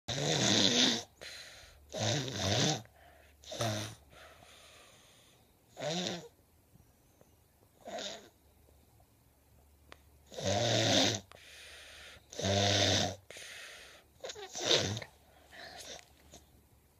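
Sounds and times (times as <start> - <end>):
buzzing snore: 0.1 - 4.3, 5.7 - 6.4, 7.8 - 8.4, 10.3 - 11.4, 12.2 - 15.2
quiet breathing: 1.1 - 1.9, 2.8 - 5.7, 11.2 - 12.4, 13.2 - 16.6.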